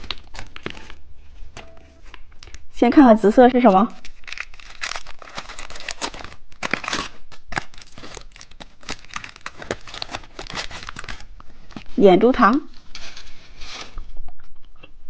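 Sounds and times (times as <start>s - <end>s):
plastic wrapper crinkling: 0.0s - 12.0s.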